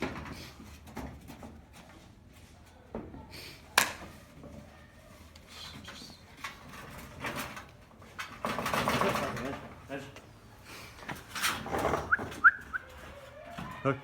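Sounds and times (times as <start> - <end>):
puppies clicking and knocking: 5.9 - 9.9.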